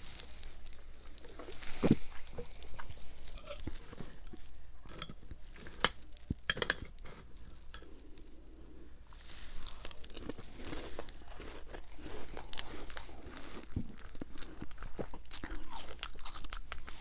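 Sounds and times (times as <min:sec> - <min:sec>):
ice being crunched: 0:03.4 - 0:04.3.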